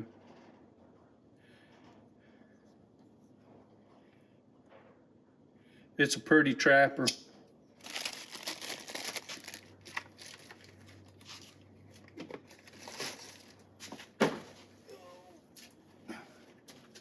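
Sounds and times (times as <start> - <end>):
packaging rustling and crinkling: 7.8 - 14.2.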